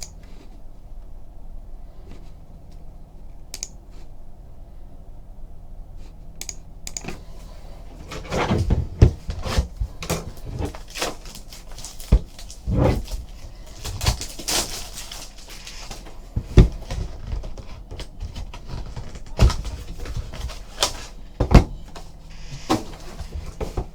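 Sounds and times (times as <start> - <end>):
clicks taps and rustling: 8.0 - 23.9.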